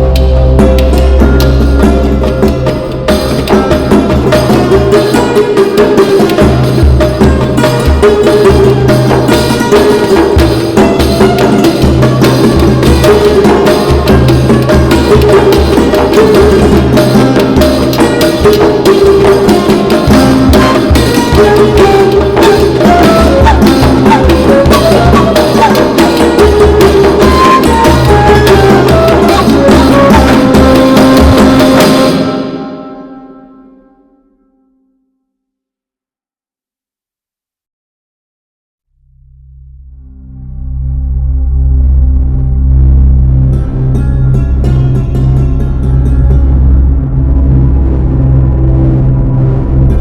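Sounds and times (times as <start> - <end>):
melody: 0.0 - 5.2
hand drum beat: 0.0 - 32.3.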